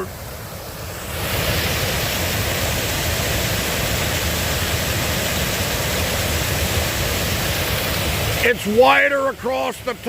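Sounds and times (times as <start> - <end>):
waterfall rushing: 0.0 - 10.0.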